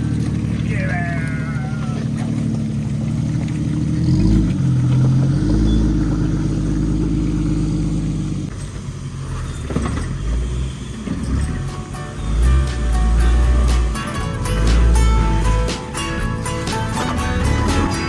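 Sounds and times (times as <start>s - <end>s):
knocks and rattles: 0.0s - 6.9s
car engine running: 0.0s - 18.0s.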